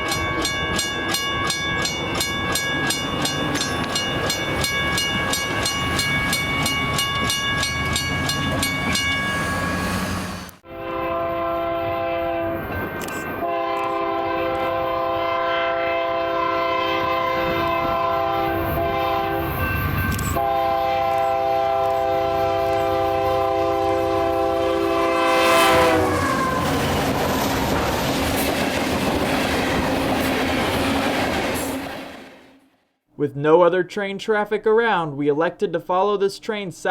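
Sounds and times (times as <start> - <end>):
crossing bell ringing: 0.0 - 15.0, 15.9 - 26.0
train passing: 0.0 - 32.8
locomotive air horn blasts: 9.6 - 12.7, 13.4 - 19.5, 20.4 - 26.6.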